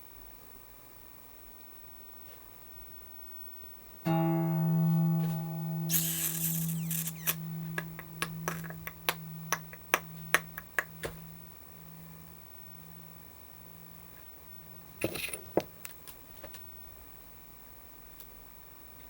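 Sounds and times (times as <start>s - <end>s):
brief rustle: 5.9s - 7.4s
sharp clicks: 5.9s - 9.0s.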